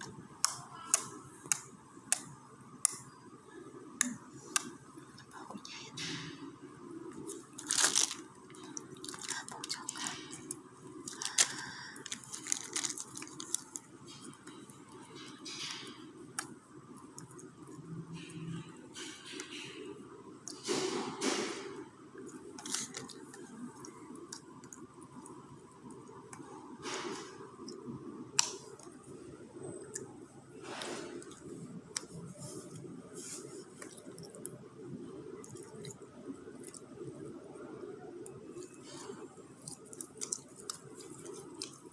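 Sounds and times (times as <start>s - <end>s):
slime squishing and crackling: 7.1s - 19.9s, 20.5s - 41.9s
slime squished by hand: 7.2s - 14.9s.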